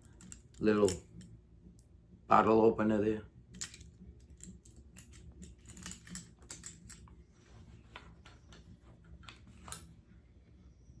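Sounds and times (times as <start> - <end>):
keys clinking on keyring: 0.0 - 1.2, 3.5 - 7.1.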